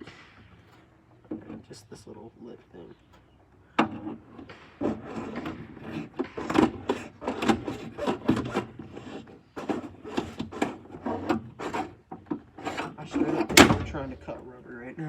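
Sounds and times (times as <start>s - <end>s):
hand saw rasping through rubber: 3.8s - 13.6s.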